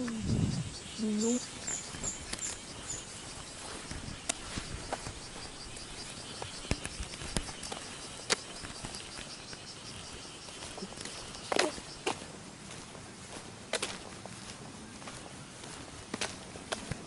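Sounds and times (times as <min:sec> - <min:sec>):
insects chirping: 0:00.0 - 0:14.0
sharp clicks and taps: 0:06.6 - 0:09.0.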